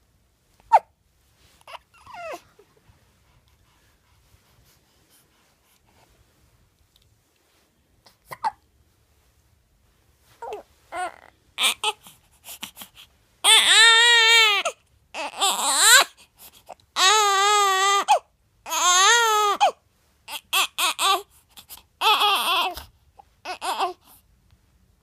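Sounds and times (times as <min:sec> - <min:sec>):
newborn baby crying: 0:00.7 - 0:00.9, 0:01.6 - 0:02.6, 0:08.2 - 0:08.6, 0:10.4 - 0:24.2.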